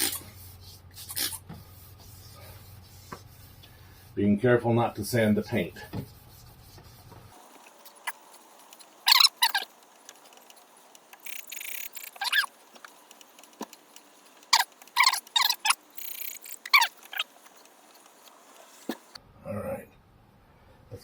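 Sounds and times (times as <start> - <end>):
wet sanding plastic: 6.0 - 19.2
high squeaks of sanding pad: 7.4 - 12.6, 14.4 - 19.2.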